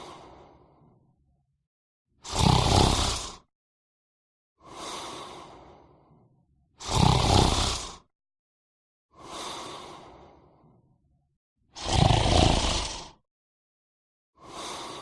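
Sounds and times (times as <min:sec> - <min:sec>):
person snoring: 0:02.2 - 0:03.5, 0:06.8 - 0:08.1, 0:11.8 - 0:13.2.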